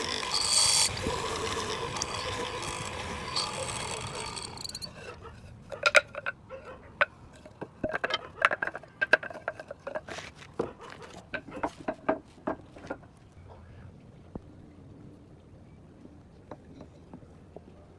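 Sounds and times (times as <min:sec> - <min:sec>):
machine running: 0:00.0 - 0:05.1.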